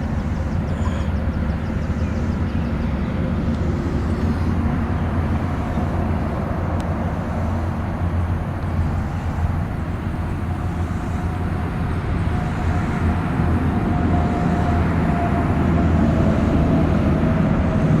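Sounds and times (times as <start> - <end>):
highway traffic rumble: 0.0 - 18.0
vehicle passing with hum: 0.0 - 18.0.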